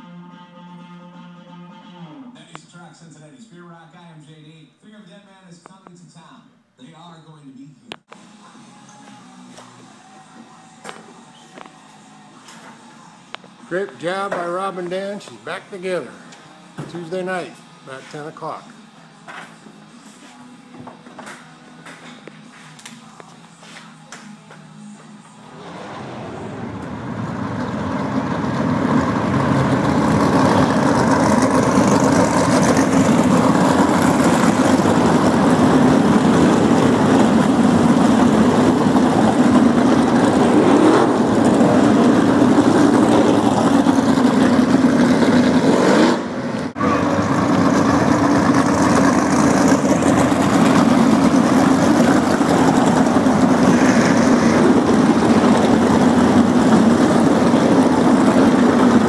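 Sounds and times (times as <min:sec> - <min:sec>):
race car engine drone: 0:24.9 - 0:59.0.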